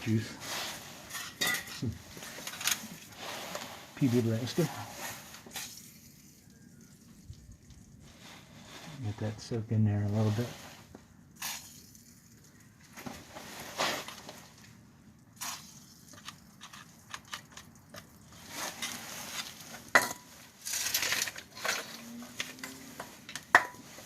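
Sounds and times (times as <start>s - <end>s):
tools clinking and clanking: 1.1s - 2.9s.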